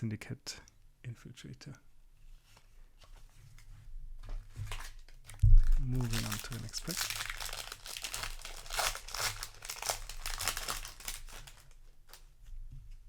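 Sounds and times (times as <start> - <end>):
foil wrapper crinkling and tearing: 4.6 - 12.2.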